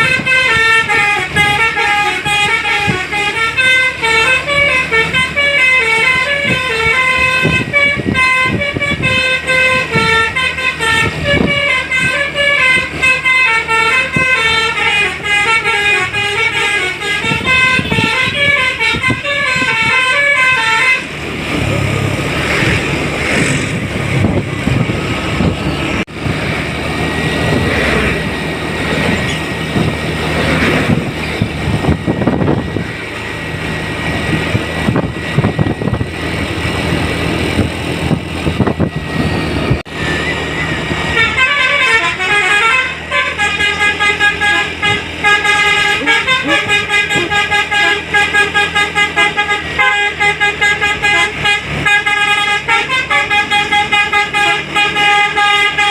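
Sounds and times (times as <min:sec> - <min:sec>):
multi-tone bus horn tune: 0:00.0 - 0:25.5, 0:39.7 - 0:55.9
bus and traffic engine noise: 0:00.0 - 0:55.9.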